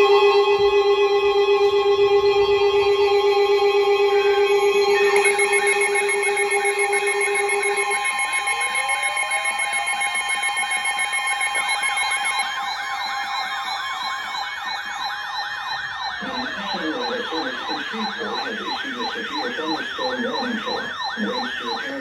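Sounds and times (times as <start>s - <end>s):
electronic sirens sweeping: 0.0s - 22.0s
siren winding up: 1.6s - 22.0s
steady alert tones: 4.3s - 12.5s, 16.0s - 22.0s.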